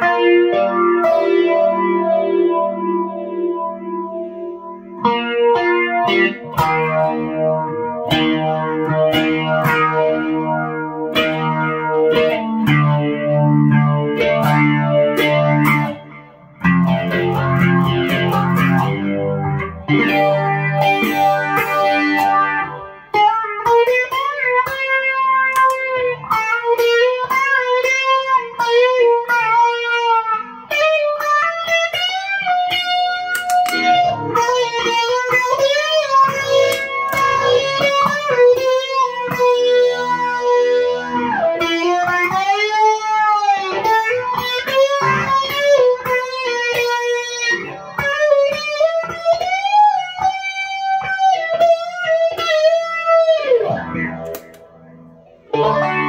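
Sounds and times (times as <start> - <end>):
electric guitar lead: 0.0 - 56.0.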